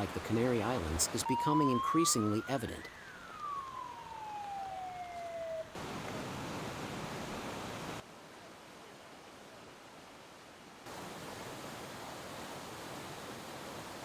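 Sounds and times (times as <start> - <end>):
emergency vehicle siren wailing: 1.2 - 5.8.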